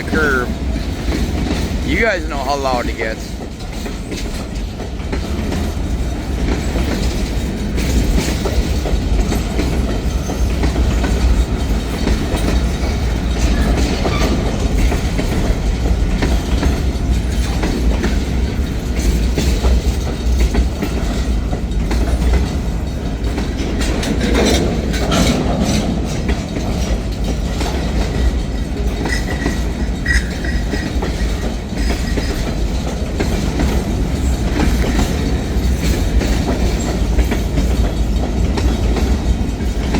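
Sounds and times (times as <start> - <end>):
train wheels clicking over rail joints: 0.0 - 39.9
high wheel squeals: 29.0 - 32.6.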